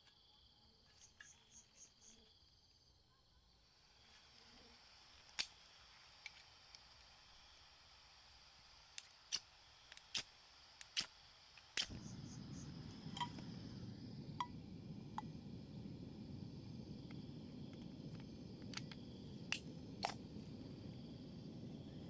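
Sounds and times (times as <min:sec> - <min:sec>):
steady low hiss: 0:03.6 - 0:22.0
sharp clicks: 0:09.0 - 0:12.1.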